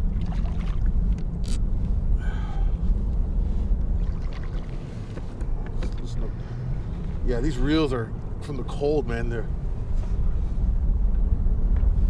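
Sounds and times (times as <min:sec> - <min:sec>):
wind buffeting the microphone: 0:09.6 - 0:12.0.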